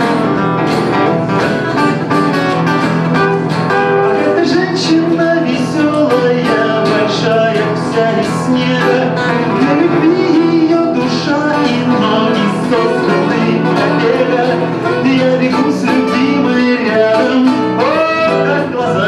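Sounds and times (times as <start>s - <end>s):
acoustic guitar: 0.0s - 19.0s
men singing: 4.1s - 19.0s.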